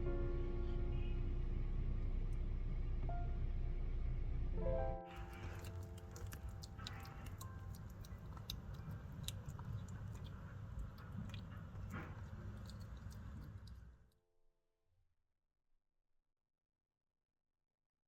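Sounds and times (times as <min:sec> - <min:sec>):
cat chewing food: 0:05.1 - 0:14.0.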